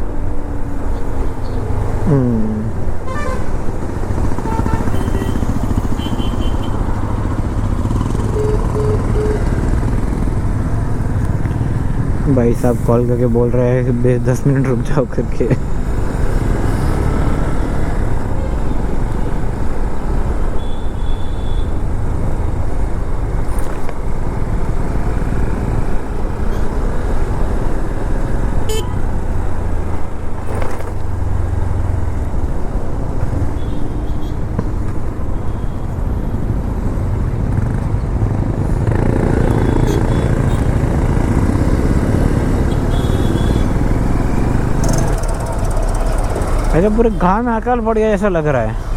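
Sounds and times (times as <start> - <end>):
road traffic rumble: 0.0 - 48.9
vehicle horn toots: 3.1 - 3.5, 4.4 - 6.8, 8.3 - 9.5, 28.7 - 29.0, 39.5 - 40.7, 42.7 - 43.8.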